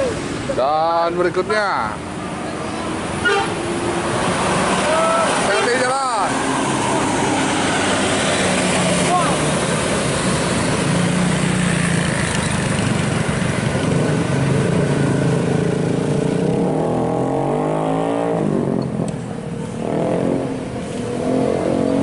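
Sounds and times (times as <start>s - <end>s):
diesel engines of passing buses: 0.0s - 22.0s
tyre and road noise: 0.0s - 22.0s.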